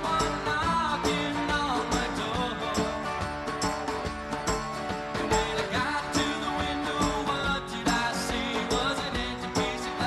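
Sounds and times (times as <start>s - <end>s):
country song with guitar and singing: 0.0s - 10.0s.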